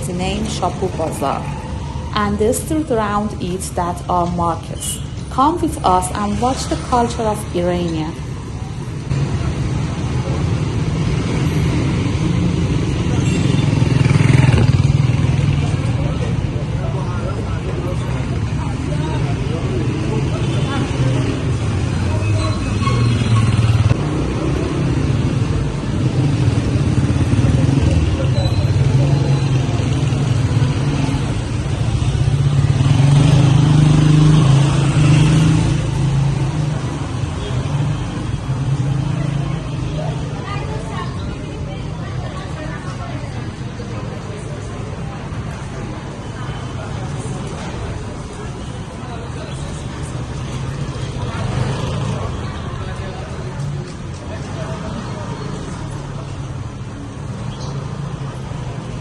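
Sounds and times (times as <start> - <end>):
street traffic: 0.0 - 59.0
vehicle engine running nearby: 8.2 - 59.0
vehicle engine running close by: 9.1 - 22.1.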